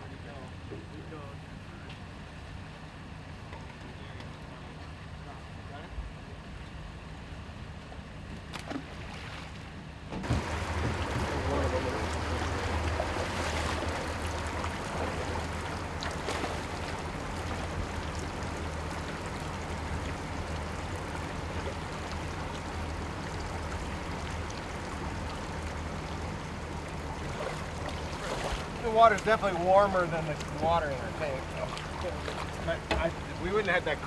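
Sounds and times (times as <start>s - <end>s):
low steady hum: 0.0s - 34.0s
water rushing: 10.2s - 34.0s.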